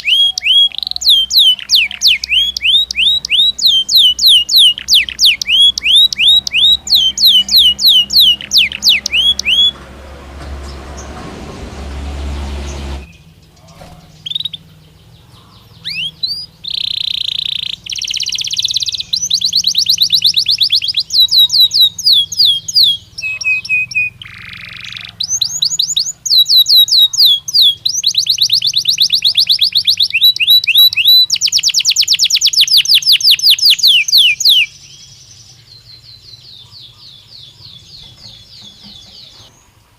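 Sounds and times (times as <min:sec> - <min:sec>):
canary singing: 0:00.0 - 0:39.9
low noisy rumble: 0:04.7 - 0:20.1.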